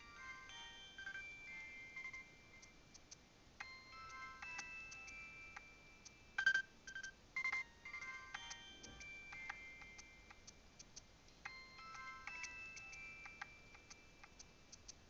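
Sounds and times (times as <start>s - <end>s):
polyphonic phone ringtone: 0.0s - 2.7s, 3.6s - 10.4s, 11.4s - 14.2s.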